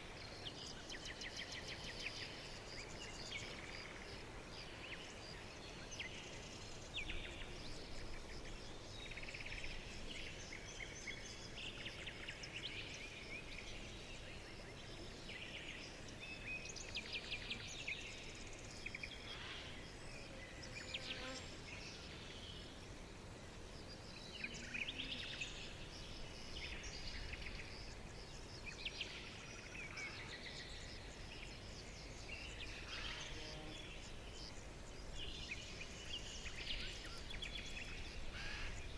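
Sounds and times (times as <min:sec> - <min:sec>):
low background noise: 0:00.0 - 0:38.9
songbirds chirping and singing: 0:23.8 - 0:38.9.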